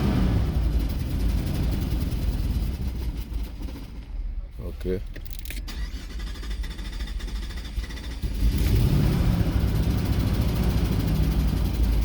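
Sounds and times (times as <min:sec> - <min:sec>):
engine running roughly: 0:00.0 - 0:04.4, 0:05.8 - 0:12.0.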